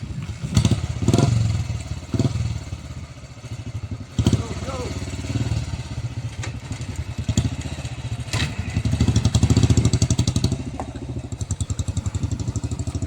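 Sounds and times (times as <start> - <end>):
motorcycle engine thumping: 3.8 - 13.0.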